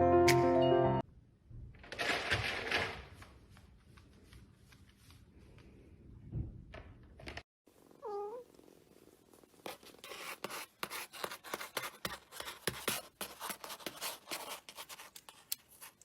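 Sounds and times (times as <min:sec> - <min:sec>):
cat meowing: 0:08.0 - 0:08.4.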